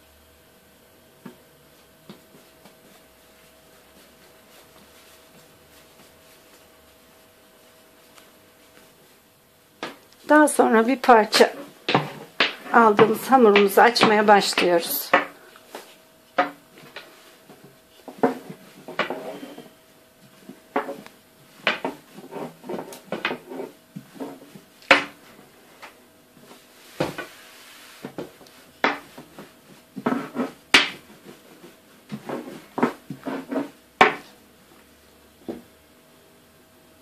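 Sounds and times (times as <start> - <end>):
rolling pin knocking on board: 11.4 - 15.4, 16.4 - 17.0, 21.6 - 23.6, 24.2 - 25.2, 28.1 - 29.4, 30.0 - 31.4, 32.1 - 34.3.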